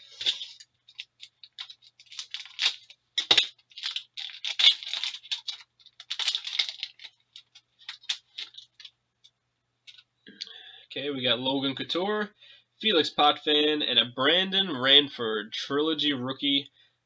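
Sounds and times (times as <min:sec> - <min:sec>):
wrapper and cards rustling: 0:00.0 - 0:09.0.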